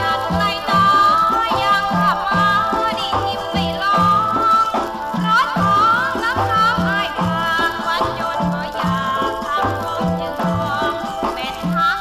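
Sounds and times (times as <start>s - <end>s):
song with sliding melody: 0.0s - 12.0s.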